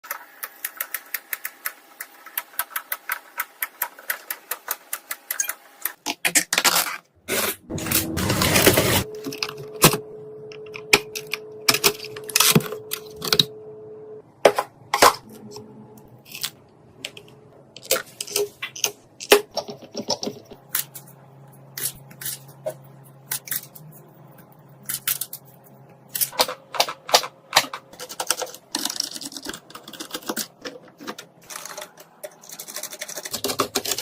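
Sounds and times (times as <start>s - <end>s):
steady hum: 7.2s - 28.8s.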